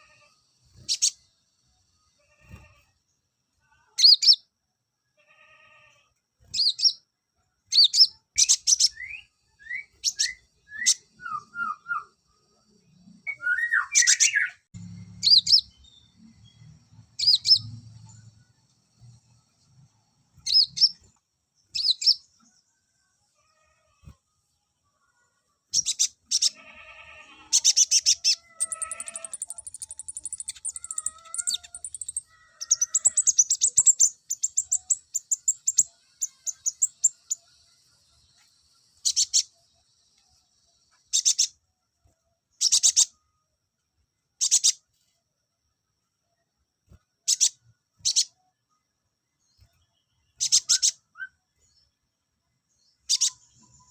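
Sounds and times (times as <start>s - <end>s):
sunbird singing high trills: 7.7s - 12.3s, 20.4s - 22.4s, 25.7s - 39.9s, 49.4s - 51.8s, 52.8s - 53.9s.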